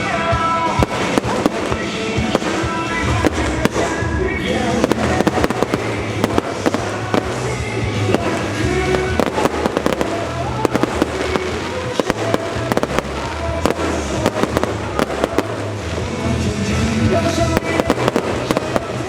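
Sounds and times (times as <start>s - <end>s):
fireworks banging: 0.0s - 19.0s
music from stadium speakers: 0.0s - 19.0s.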